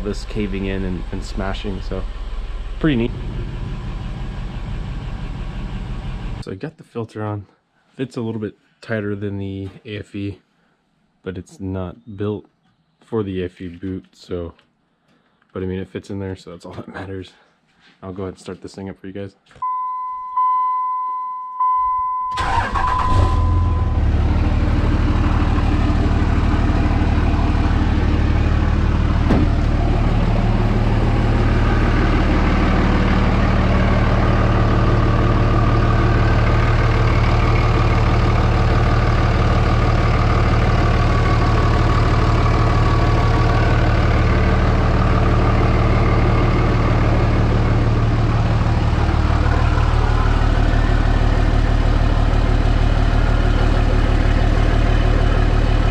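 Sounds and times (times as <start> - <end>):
diesel engine cranking and idling: 0.0 - 6.5, 22.3 - 55.9
steady beep tone: 19.6 - 24.2.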